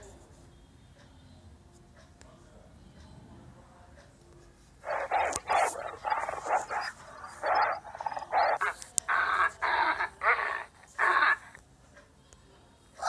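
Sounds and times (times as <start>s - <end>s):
dog barking and yipping: 4.8s - 11.5s.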